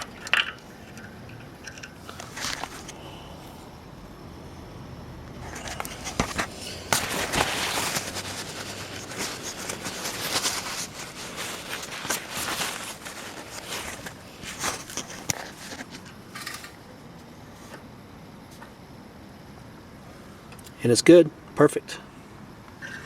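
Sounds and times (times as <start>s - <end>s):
scraping: 0.0s - 3.6s, 5.3s - 16.8s
rustling: 0.0s - 3.8s, 5.3s - 17.8s.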